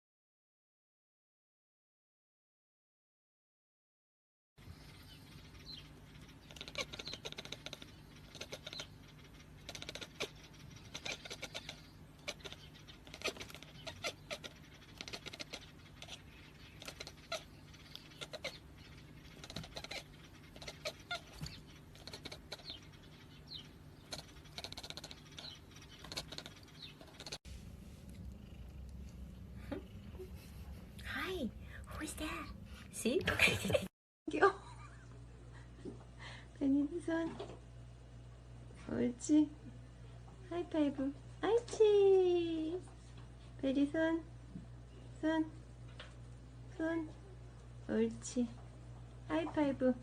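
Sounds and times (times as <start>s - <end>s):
steady low hum: 4.6s - 50.0s
kittens mewing: 6.2s - 23.3s, 24.0s - 27.4s.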